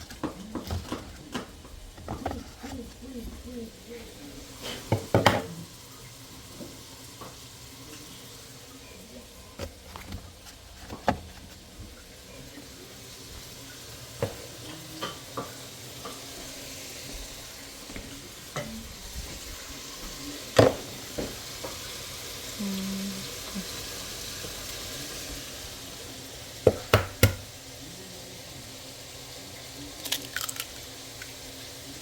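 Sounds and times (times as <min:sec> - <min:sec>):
food sizzling in a pan: 0:00.0 - 0:32.0
spoon knocking against pan: 0:26.6 - 0:27.5.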